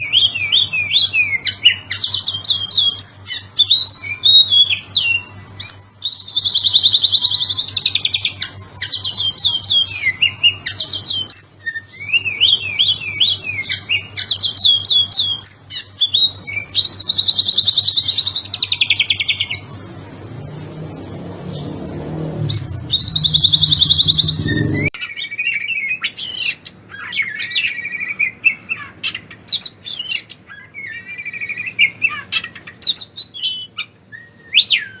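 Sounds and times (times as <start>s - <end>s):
bird singing whistles and trills: 0.0s - 19.8s, 22.4s - 35.0s
steady low hum: 0.0s - 25.0s
low rumble: 19.6s - 25.0s.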